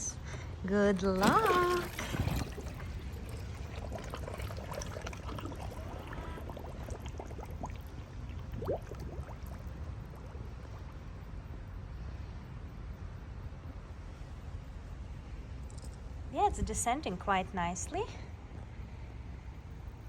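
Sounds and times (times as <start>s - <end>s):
low steady rumble: 0.0s - 20.0s
water gurgling and bubbling: 0.7s - 11.6s
small bubble ticks: 0.9s - 11.6s.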